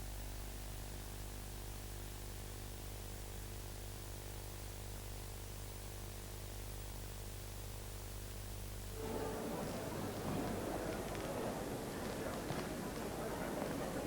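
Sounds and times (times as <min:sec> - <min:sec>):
faint hiss: 0:08.3 - 0:13.4.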